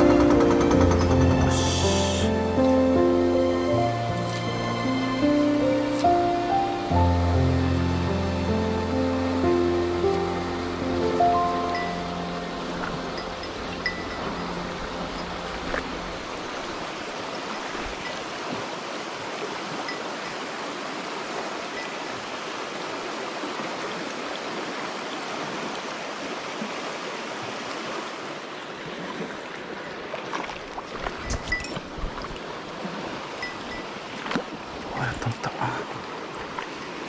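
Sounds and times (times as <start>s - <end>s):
faint sustained musical tones: 0.0s - 17.0s
mountain stream rushing: 0.0s - 37.0s.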